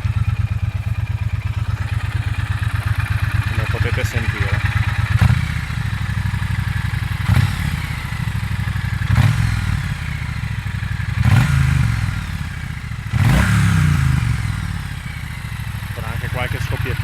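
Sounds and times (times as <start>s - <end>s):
motorcycle engine idling and revving: 0.0s - 17.0s
exhaust popping: 1.5s - 8.1s.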